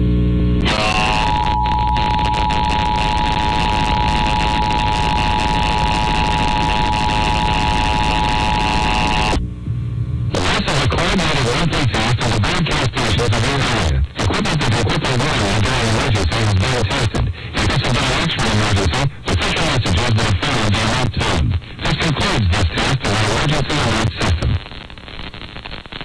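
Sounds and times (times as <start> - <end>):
steady electronic tone: 0.0 - 10.6
radio music and voices: 0.6 - 9.4, 10.3 - 26.0.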